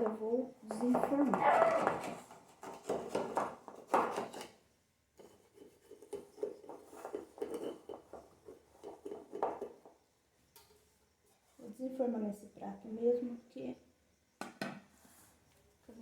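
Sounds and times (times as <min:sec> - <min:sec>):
cake pan scraping and knocking: 0:00.9 - 0:04.6, 0:05.2 - 0:10.0.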